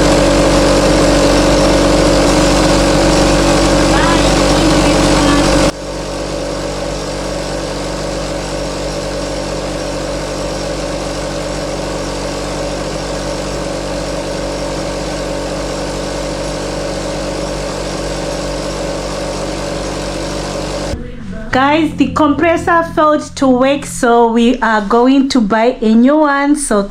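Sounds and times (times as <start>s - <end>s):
air compressor running: 0.0s - 21.0s.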